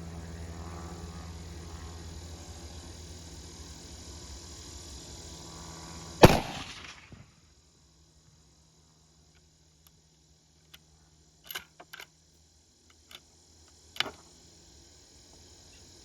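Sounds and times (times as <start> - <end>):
rifle bolt metallic clicks: 11.4 - 12.1.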